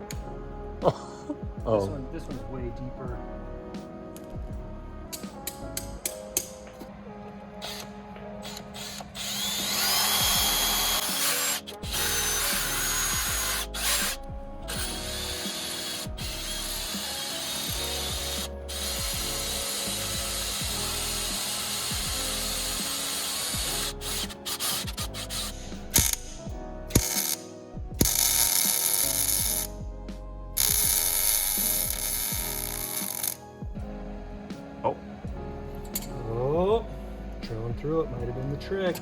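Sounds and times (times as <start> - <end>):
background music: 0.0 - 39.0
electric drill boring into metal: 7.6 - 26.3, 26.9 - 27.4, 28.0 - 29.7, 30.6 - 33.4.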